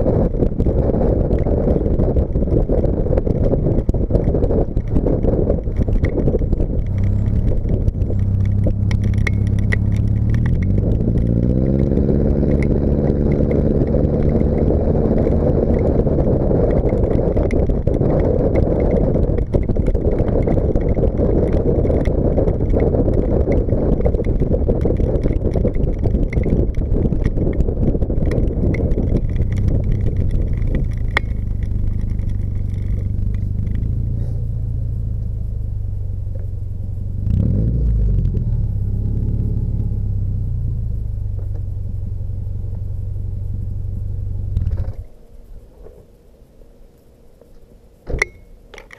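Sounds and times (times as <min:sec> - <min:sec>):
car engine revving under load: 0:00.2 - 0:45.2.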